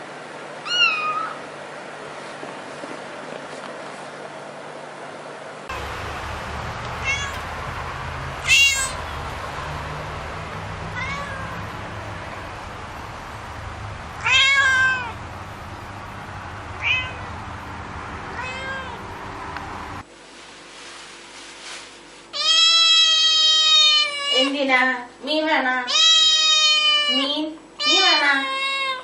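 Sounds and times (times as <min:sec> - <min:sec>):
cat meowing: 0:00.6 - 0:01.4, 0:07.0 - 0:07.5, 0:08.4 - 0:09.1, 0:10.9 - 0:11.8, 0:14.2 - 0:15.2, 0:16.8 - 0:17.4, 0:18.3 - 0:19.1, 0:22.4 - 0:24.5, 0:25.9 - 0:29.0
low hum: 0:05.7 - 0:20.1.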